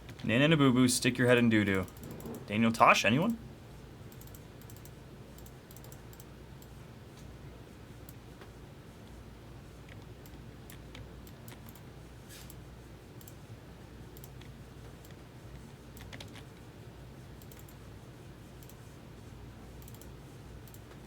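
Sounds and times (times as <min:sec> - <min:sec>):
low steady hum: 0:00.0 - 0:21.0
typing on computer keyboard: 0:04.1 - 0:06.7, 0:09.9 - 0:11.9, 0:14.2 - 0:15.2, 0:16.0 - 0:16.5, 0:17.4 - 0:17.8, 0:19.8 - 0:21.0.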